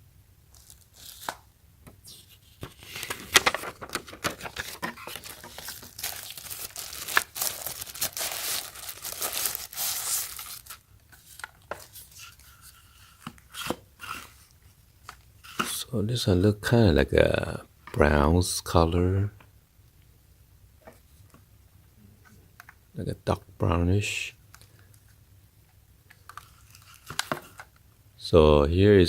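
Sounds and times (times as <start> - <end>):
packaging tearing and crinkling: 2.7 - 12.4.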